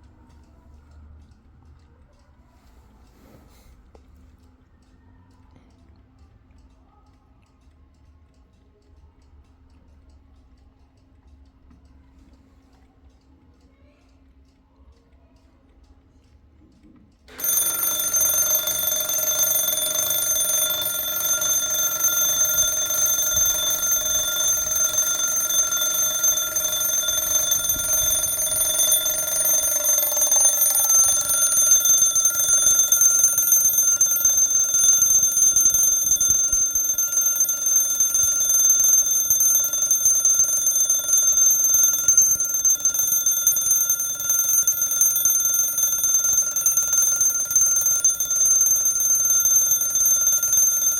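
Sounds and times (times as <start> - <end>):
alarm clock bell ringing: 17.3 - 50.9.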